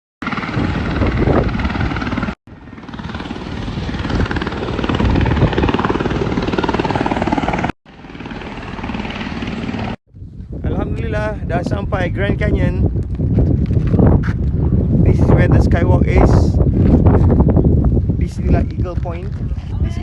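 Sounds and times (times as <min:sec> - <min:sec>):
helicopter rotor beating: 0:00.2 - 0:10.0.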